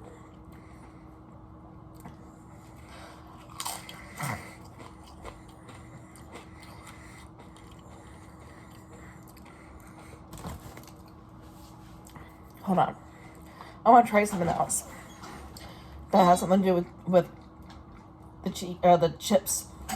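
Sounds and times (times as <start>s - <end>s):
chewing crunchy chips: 1.9s - 11.3s.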